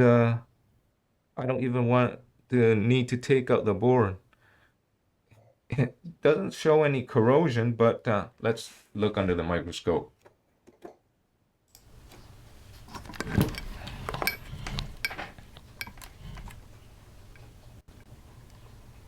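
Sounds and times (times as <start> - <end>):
low electrical hum: 11.8 - 19.0.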